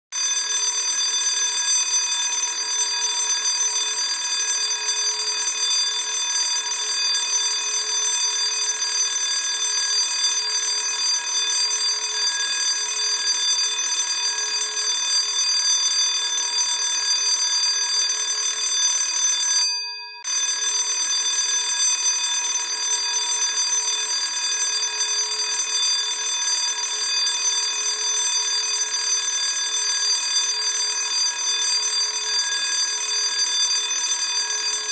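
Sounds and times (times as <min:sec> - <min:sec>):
school bell ringing: 0:00.2 - 0:21.5, 0:29.9 - 0:34.9.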